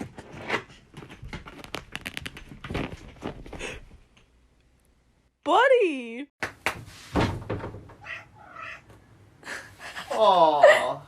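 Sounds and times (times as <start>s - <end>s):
crinkling and rustling: 0.0s - 3.7s.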